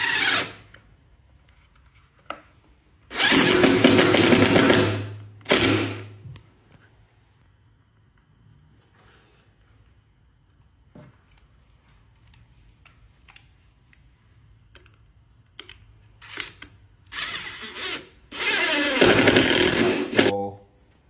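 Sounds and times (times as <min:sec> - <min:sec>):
power drill running: 0:00.0 - 0:00.6, 0:03.1 - 0:06.1, 0:17.1 - 0:20.3.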